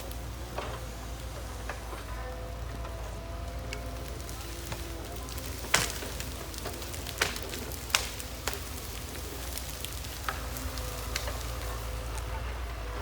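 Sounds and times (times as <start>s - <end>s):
heavy machine engine running: 0.0s - 13.0s
sharp cracks: 4.4s - 12.3s.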